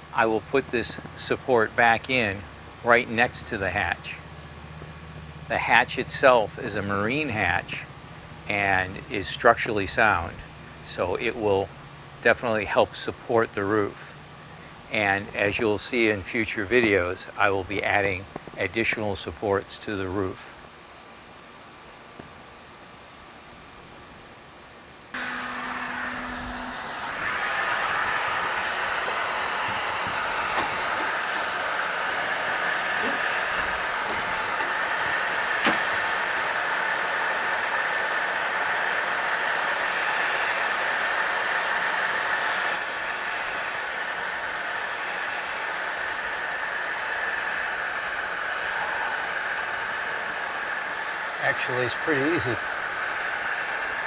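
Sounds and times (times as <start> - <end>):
heat gun blowing hiss: 25.2 - 54.0.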